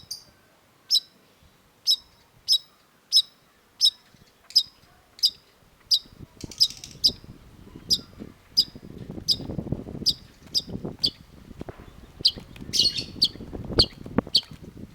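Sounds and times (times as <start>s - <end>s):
low rumbling noise: 6.0s - 14.9s.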